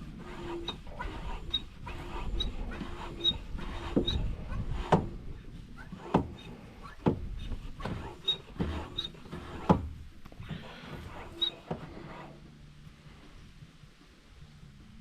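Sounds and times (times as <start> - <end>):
low rumbling background: 0.0 - 15.0
knocks and thumps: 3.6 - 5.2, 6.0 - 12.0.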